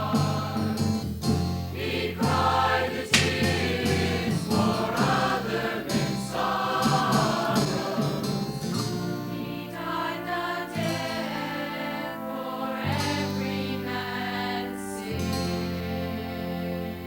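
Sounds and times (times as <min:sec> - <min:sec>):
gospel choir singing: 0:00.0 - 0:01.1, 0:01.7 - 0:17.0.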